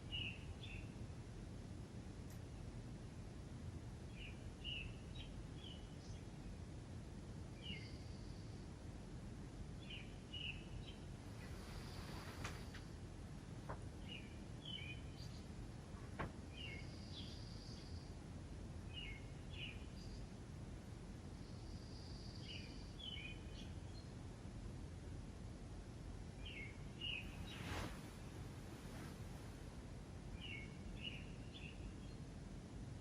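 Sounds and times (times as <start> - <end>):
low background noise: 0.0 - 33.0
small bird chirping: 7.6 - 8.6, 14.0 - 18.2, 18.9 - 20.4, 21.3 - 24.1, 26.4 - 29.2, 30.3 - 32.3.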